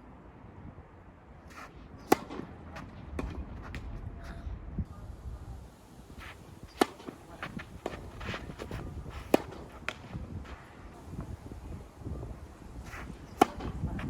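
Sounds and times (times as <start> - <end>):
racket striking tennis ball: 1.5 - 4.0, 6.2 - 10.9, 12.9 - 14.0
wind rumble on microphone: 2.5 - 14.0
shoes on court: 6.1 - 11.4.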